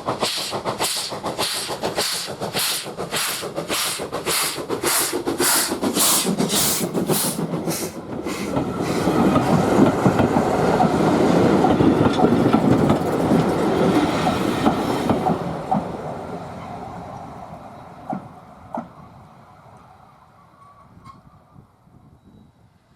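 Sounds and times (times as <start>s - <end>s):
steam engine exhaust beats: 0.0s - 10.3s
train rumbling and clattering on rails: 0.0s - 22.9s.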